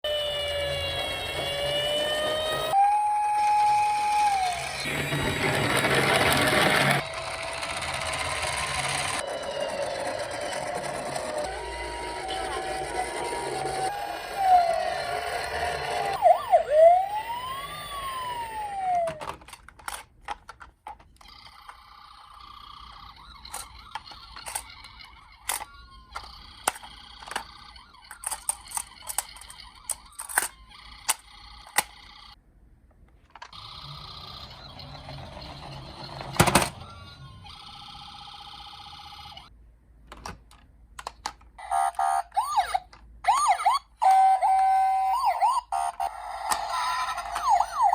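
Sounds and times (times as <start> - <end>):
toy siren wailing: 0.0 - 19.4, 21.2 - 32.4, 33.5 - 39.5, 41.6 - 47.9
plastic clicks: 40.0 - 41.6.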